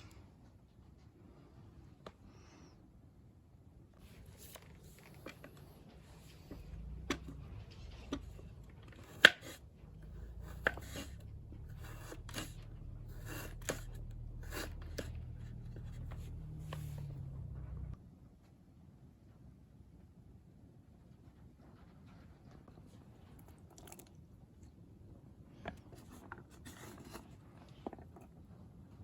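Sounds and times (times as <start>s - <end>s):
low steady rumble: 3.9s - 29.0s
clicks and rustles of handling: 4.0s - 18.0s, 25.5s - 28.8s.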